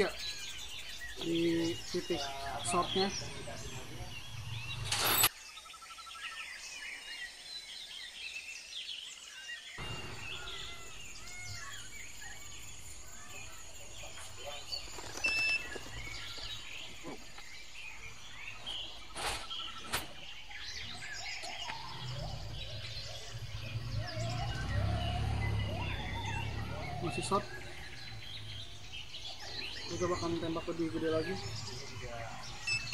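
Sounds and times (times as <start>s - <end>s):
small birds chirping: 0.0s - 32.9s.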